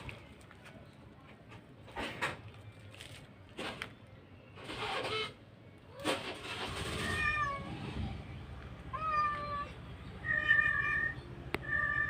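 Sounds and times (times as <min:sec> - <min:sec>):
cats meowing: 0:05.9 - 0:08.2, 0:08.8 - 0:12.0.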